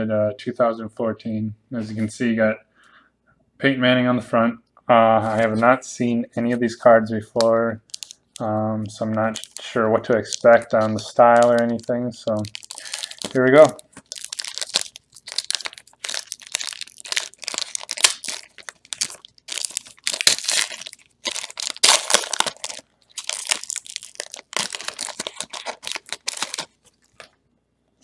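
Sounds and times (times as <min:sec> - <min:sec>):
wrapper tearing and crinkling: 0:07.9 - 0:27.4.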